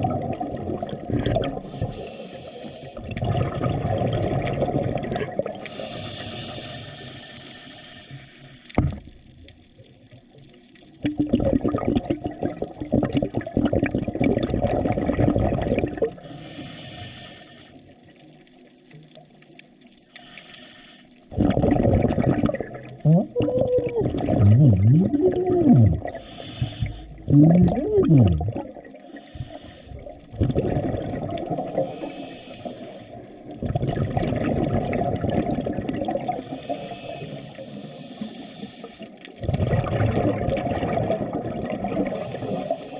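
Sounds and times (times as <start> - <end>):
water rushing underwater: 0.0 - 42.9.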